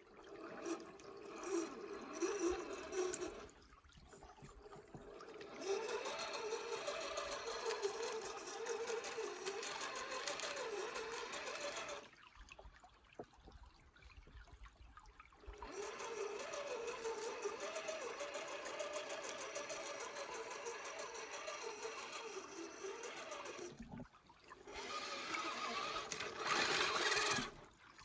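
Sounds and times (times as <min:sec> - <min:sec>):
electric motor and gearbox whining: 0:00.3 - 0:03.6, 0:04.6 - 0:12.1, 0:15.6 - 0:23.8, 0:24.6 - 0:27.6.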